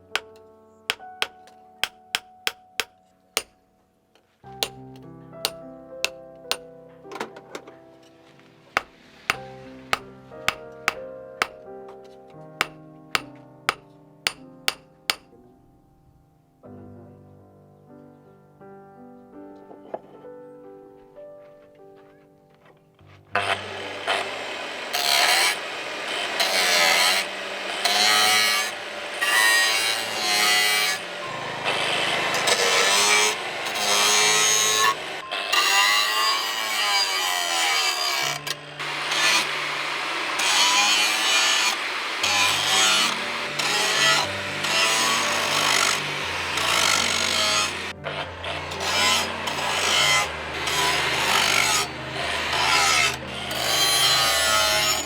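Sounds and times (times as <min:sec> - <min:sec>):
hand file rasping on steel: 0:00.1 - 0:03.5, 0:08.8 - 0:11.6, 0:12.6 - 0:15.3, 0:26.3 - 0:47.9, 0:48.6 - 0:55.0.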